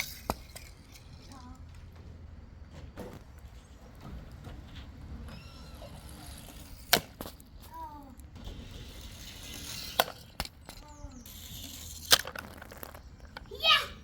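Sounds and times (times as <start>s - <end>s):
toy cars clacking: 0.0s - 2.0s, 5.3s - 13.9s
short pitch-bending squeaks: 5.2s - 6.9s.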